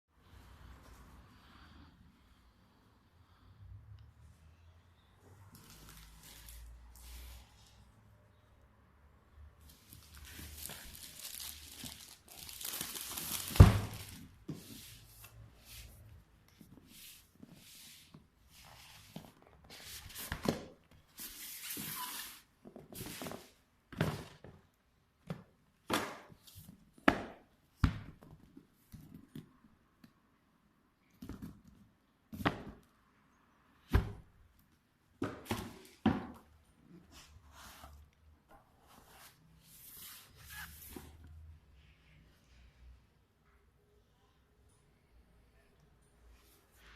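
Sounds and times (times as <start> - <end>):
packaging rustling: 9.7 - 14.3.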